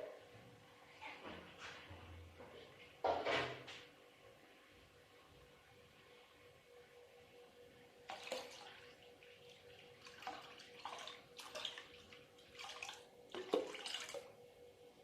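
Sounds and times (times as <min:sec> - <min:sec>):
water splashing: 0:08.1 - 0:08.9, 0:09.5 - 0:14.3.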